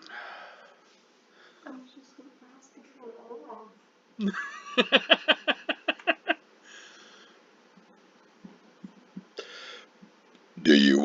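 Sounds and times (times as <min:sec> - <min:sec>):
breathy puffs of air: 0:06.6 - 0:07.4, 0:09.4 - 0:10.0.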